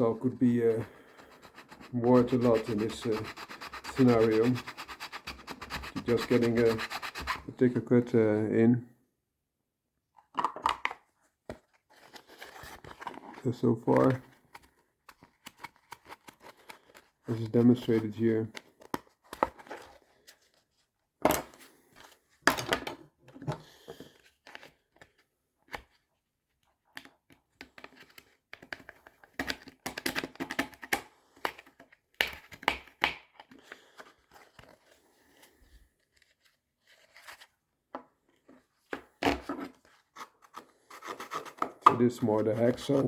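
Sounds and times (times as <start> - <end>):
hand saw cutting plastic: 1.1 - 7.4.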